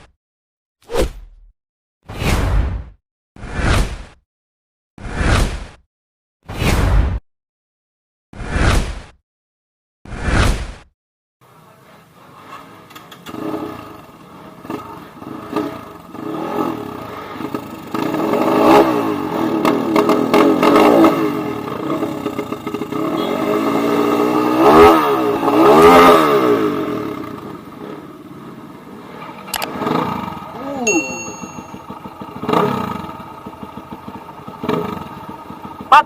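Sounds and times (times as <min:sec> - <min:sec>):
dirt bike engines revving: 0:13.2 - 0:28.0.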